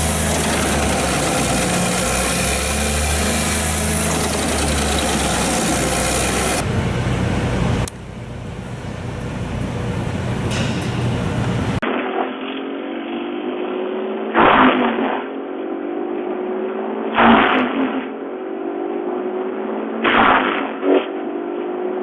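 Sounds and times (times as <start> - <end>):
wood chipper engine running: 0.0 - 11.8
wood going through chipper: 0.0 - 11.8.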